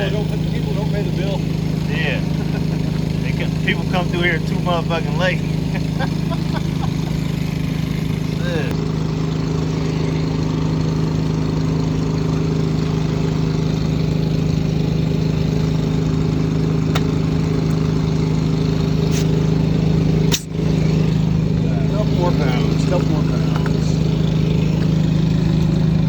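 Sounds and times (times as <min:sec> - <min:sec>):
engine droning steadily: 0:00.0 - 0:26.0.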